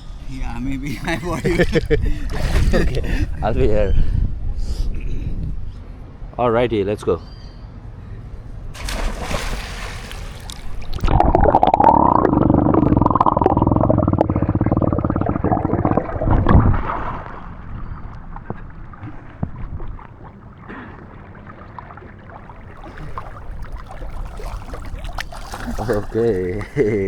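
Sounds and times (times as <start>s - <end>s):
water lapping and splashing: 8.8s - 11.6s, 14.3s - 27.0s
underwater water churning: 8.8s - 26.9s.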